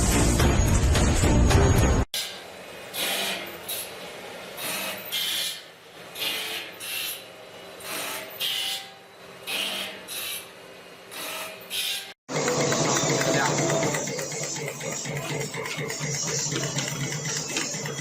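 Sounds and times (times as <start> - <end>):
music: 0.0 - 2.0, 12.3 - 18.0.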